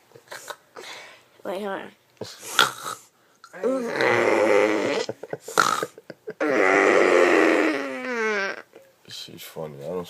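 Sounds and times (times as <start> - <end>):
child imitating snoring: 2.5 - 8.7.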